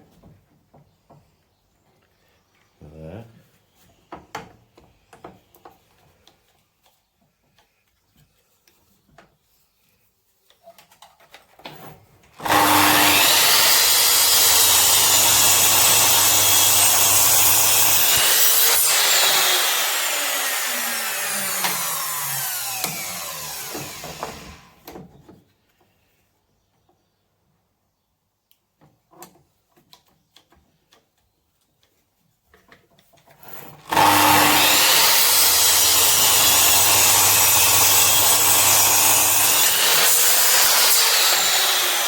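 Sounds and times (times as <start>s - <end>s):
power saw cutting timber: 12.4s - 24.8s, 33.4s - 42.0s
saw blade spinning down: 12.4s - 24.8s, 33.8s - 42.0s.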